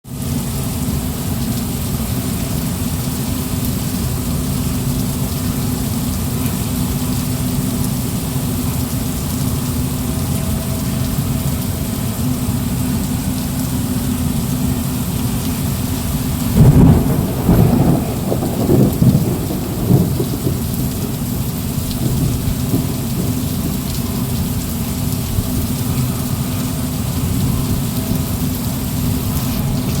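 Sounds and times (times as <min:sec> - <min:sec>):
heavy rain: 0:00.0 - 0:30.0
thunder clap rumbling: 0:16.0 - 0:26.4.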